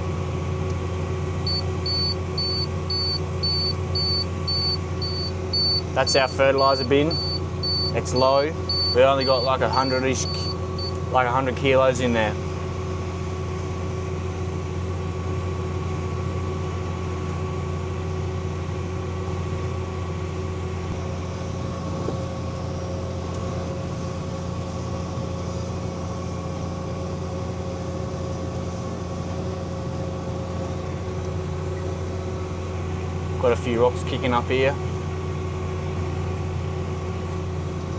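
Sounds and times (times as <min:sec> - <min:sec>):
tractor engine drone: 0:00.0 - 0:37.9
constant whining tones: 0:01.2 - 0:14.7.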